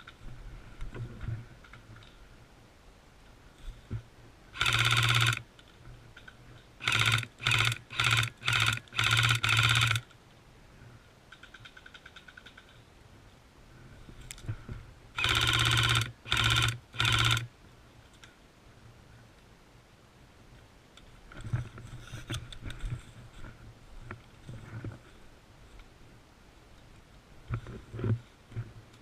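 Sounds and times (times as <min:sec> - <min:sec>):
airsoft gun firing bursts: 0:04.6 - 0:05.4, 0:06.8 - 0:10.0, 0:15.2 - 0:17.5.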